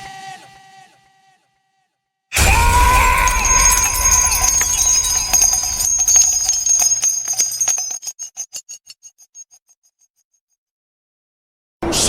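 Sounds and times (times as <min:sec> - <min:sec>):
bell-like shimmer with stutter echoes: 0:02.5 - 0:08.8.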